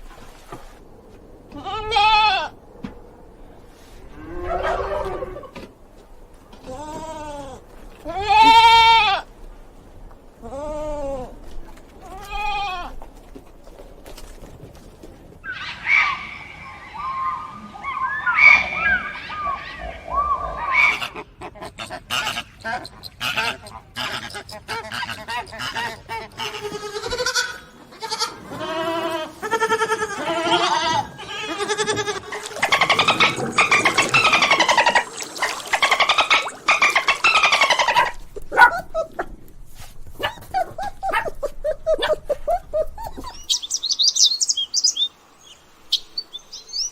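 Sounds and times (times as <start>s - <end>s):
goat bleating: 6.6s - 9.3s, 26.2s - 32.5s.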